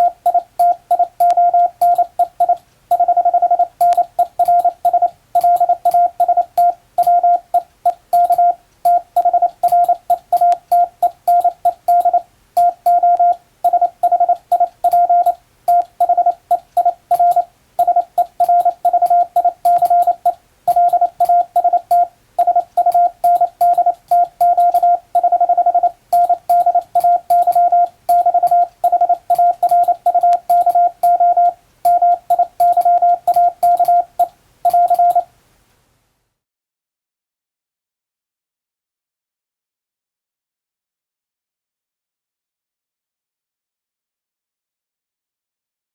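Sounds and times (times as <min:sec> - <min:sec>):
morse code beeps: 0:00.0 - 0:35.3.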